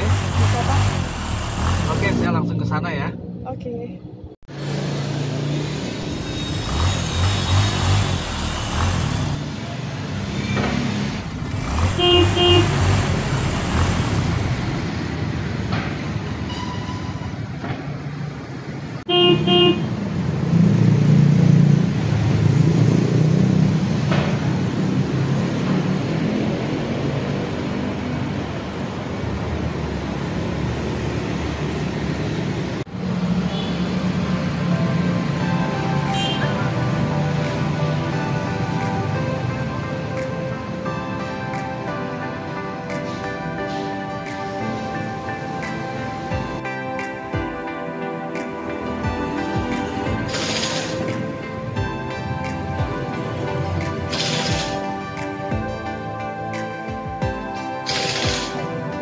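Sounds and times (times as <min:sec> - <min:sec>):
road traffic engine noise: 0:00.0 - 0:59.0
car horn toots: 0:11.6 - 0:13.2, 0:19.1 - 0:19.9, 0:36.1 - 0:36.6.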